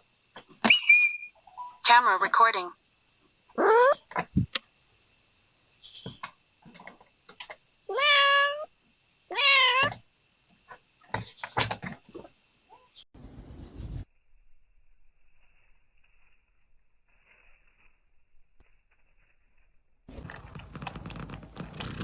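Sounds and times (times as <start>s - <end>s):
cat meowing: 7.9s - 8.7s, 9.3s - 10.0s.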